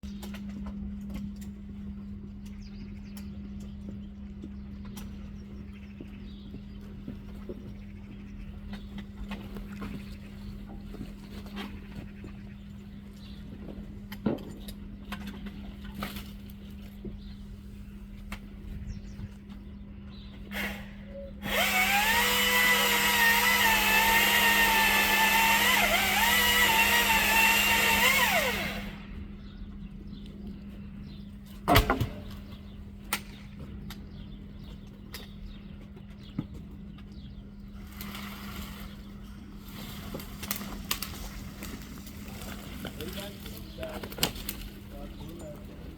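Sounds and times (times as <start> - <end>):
electric chainsaw whine: 20.5 - 29.2
sharp thump: 31.7 - 32.4.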